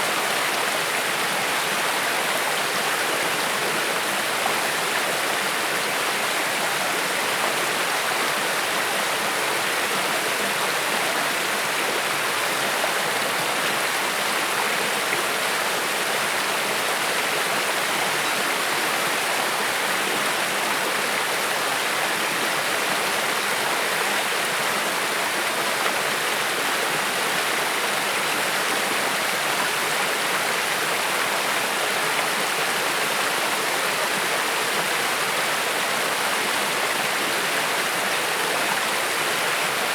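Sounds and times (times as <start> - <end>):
creek water flowing over stones: 0.0 - 39.9.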